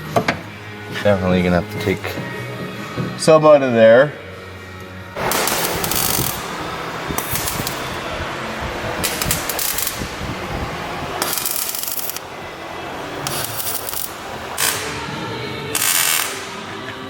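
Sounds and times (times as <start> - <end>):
steady background noise: 0.0 - 17.0
hissing metalwork bursts: 5.2 - 8.1, 11.1 - 12.2, 13.2 - 16.7.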